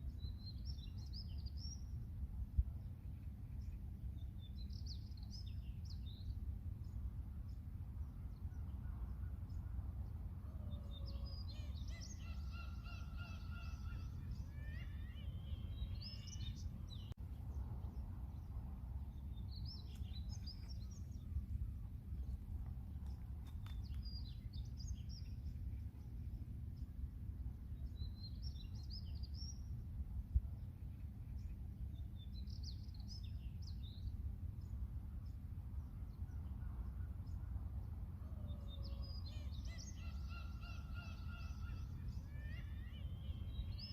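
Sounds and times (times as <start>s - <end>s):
steady low rumble: 0.0s - 38.4s
seagulls and birds calling: 10.6s - 16.9s, 38.2s - 43.9s.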